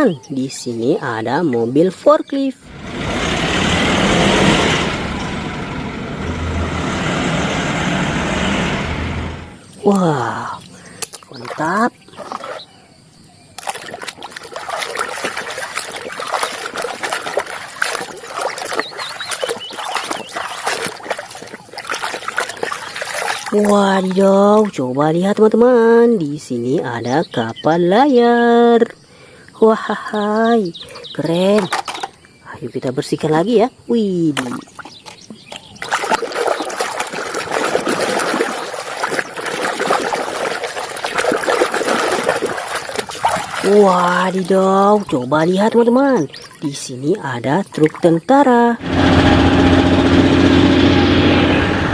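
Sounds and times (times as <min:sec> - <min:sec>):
water splashing and trickling: 0:09.5 - 0:12.8, 0:13.5 - 0:27.7, 0:32.8 - 0:48.8.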